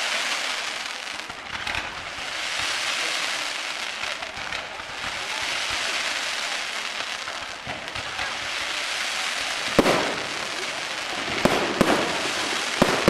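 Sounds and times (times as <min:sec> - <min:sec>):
fireworks crackling and popping: 0:00.0 - 0:13.0
loud firework bang: 0:09.8 - 0:10.6, 0:11.3 - 0:13.0.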